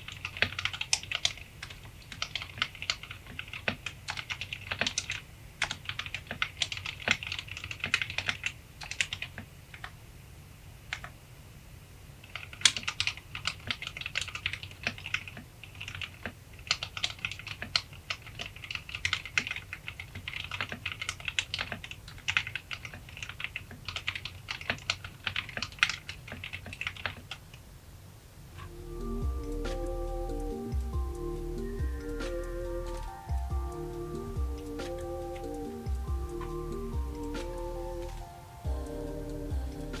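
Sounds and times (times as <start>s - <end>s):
fast typing on mechanical keyboard: 0.0s - 9.9s, 12.3s - 27.4s.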